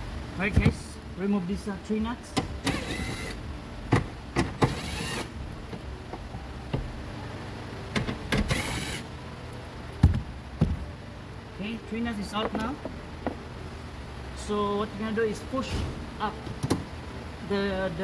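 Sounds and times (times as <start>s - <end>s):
small power tool whirring: 2.7s - 3.4s, 4.6s - 5.3s, 8.4s - 9.0s.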